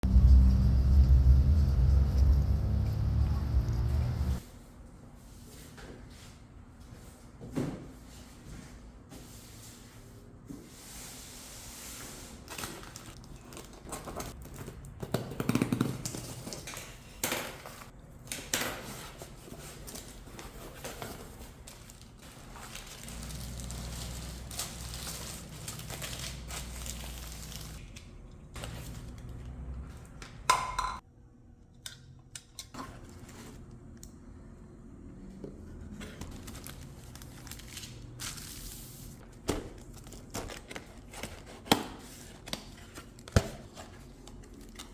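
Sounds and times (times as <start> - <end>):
packaging crinkling and rustling: 12.4 - 15.0, 16.0 - 27.9, 35.9 - 44.9.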